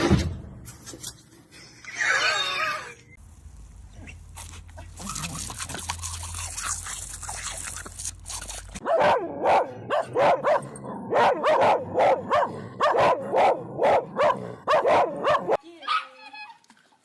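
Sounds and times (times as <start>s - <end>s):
steady hiss: 3.2s - 5.1s
dog barking: 8.8s - 16.0s.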